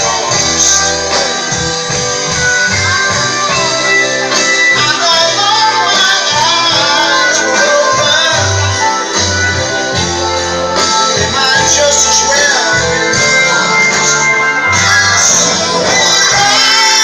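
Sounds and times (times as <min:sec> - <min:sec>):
dance music with bass and guitar: 0:00.0 - 0:17.0
person singing: 0:03.5 - 0:17.0.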